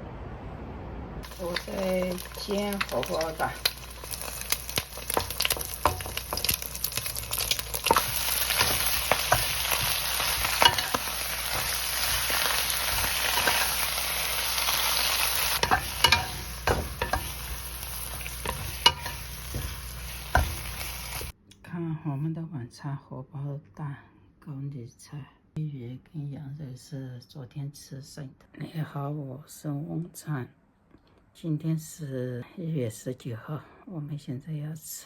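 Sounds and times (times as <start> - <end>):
egg sizzling in a pan: 1.2 - 21.4.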